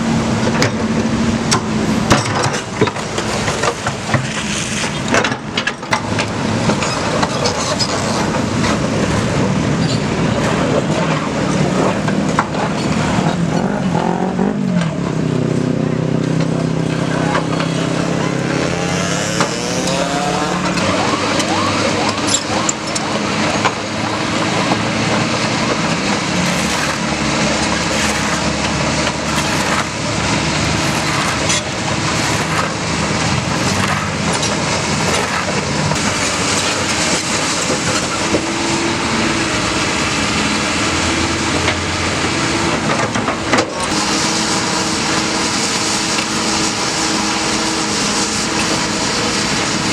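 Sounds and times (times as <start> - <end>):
excavator diesel engine running: 19.4 - 45.3.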